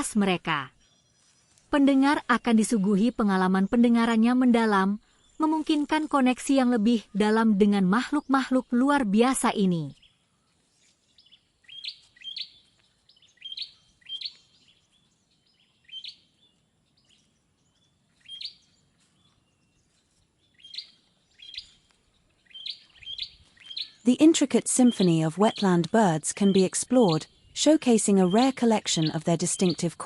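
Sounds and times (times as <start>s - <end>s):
wetland bird calling: 22.5s - 30.0s.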